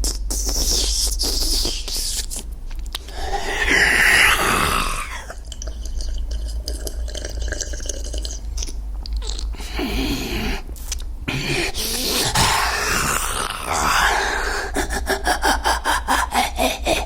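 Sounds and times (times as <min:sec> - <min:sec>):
wet clicking chewing mouth noises: 0:00.0 - 0:03.1, 0:05.3 - 0:09.8, 0:10.6 - 0:12.2
breathy hiss: 0:03.0 - 0:08.6, 0:09.2 - 0:17.0
short low grunts: 0:09.2 - 0:14.2.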